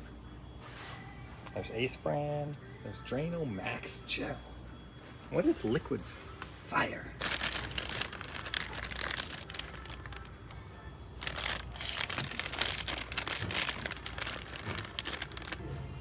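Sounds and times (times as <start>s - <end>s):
crinkling rustling handling noise: 5.4s - 10.6s, 11.2s - 15.6s.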